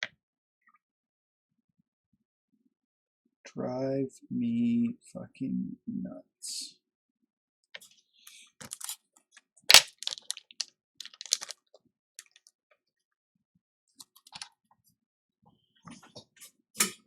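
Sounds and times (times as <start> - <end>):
small tools clicking and tapping: 9.7 - 11.5.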